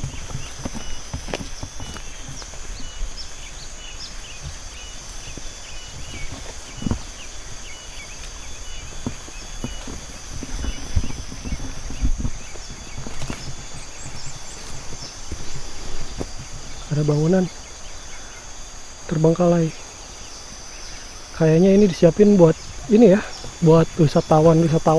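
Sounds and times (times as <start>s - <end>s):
footsteps on dirt trail: 0.0s - 24.9s
high-pitched hum: 0.0s - 24.9s.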